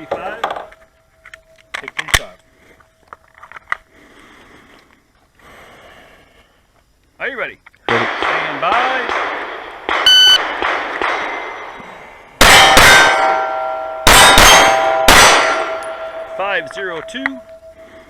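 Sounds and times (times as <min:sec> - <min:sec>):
pistol shots: 0:07.9 - 0:11.8, 0:12.4 - 0:16.4
shot timer beep: 0:10.0 - 0:10.5
steel target plate clanging: 0:12.4 - 0:17.6.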